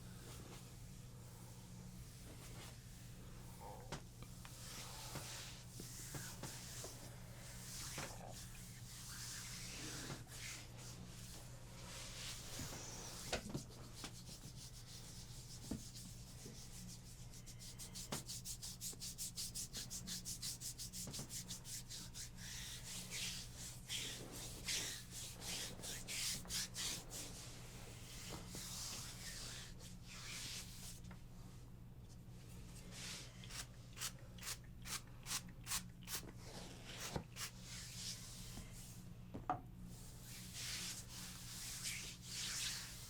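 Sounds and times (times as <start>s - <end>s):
hands rubbing over skin: 4.5s - 31.1s, 40.1s - 43.0s.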